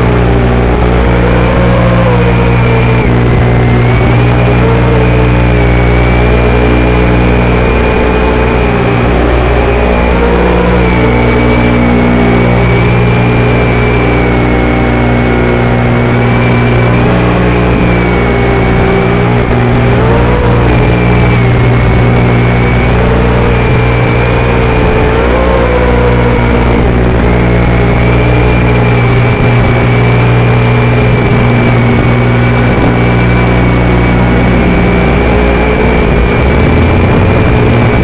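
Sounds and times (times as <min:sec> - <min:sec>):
electrical buzz: 0:00.0 - 0:38.0
wavering whine: 0:00.0 - 0:38.0.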